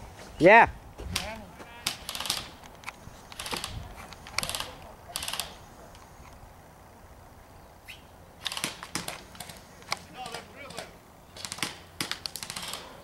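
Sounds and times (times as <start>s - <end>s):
airsoft gun firing bursts: 1.8s - 2.6s, 3.4s - 3.8s, 8.4s - 13.0s.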